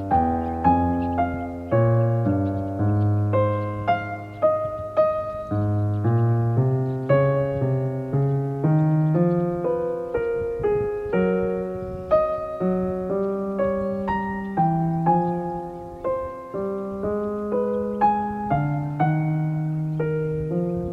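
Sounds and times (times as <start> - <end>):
soft piano music: 0.0 - 20.9.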